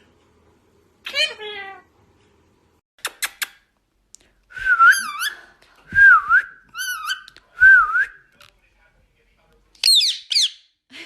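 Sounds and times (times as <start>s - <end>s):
parrot chirps and whistles: 4.8s - 5.4s, 6.7s - 7.3s, 9.8s - 10.7s.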